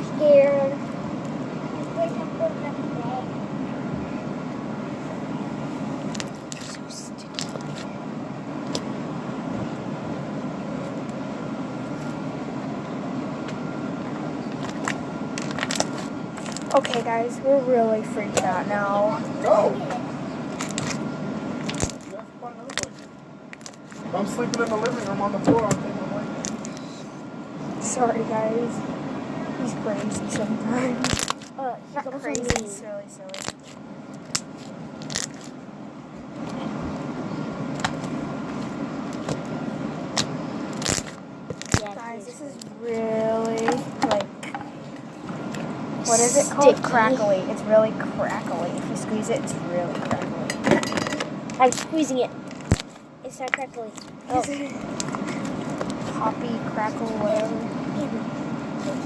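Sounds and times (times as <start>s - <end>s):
low room hum: 0.0s - 59.0s
crackling clicks: 40.2s - 42.0s.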